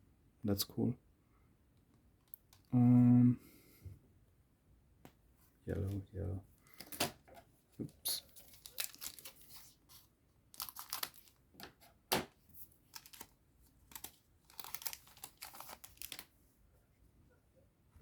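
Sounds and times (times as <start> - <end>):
foil wrapper tearing and crinkling: 8.2 - 9.8, 10.5 - 11.4, 12.8 - 16.3.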